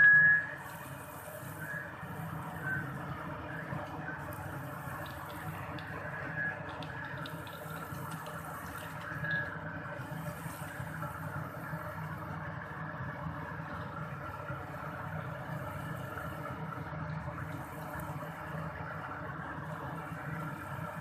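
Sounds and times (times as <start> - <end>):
vacuum cleaner running: 0.0 - 6.6.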